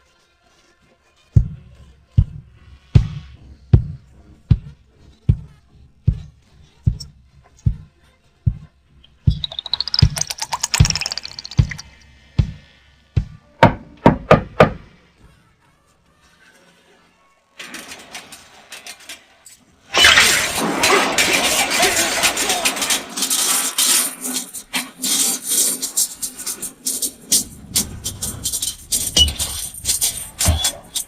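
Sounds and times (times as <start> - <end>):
dull cartoon thumps: 9.2 - 12.6, 13.2 - 14.9.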